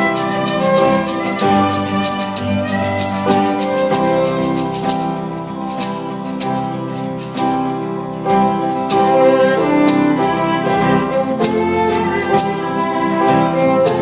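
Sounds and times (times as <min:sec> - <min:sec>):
steady percussive beat: 0:00.0 - 0:07.8
bowed strings melody: 0:00.0 - 0:14.0.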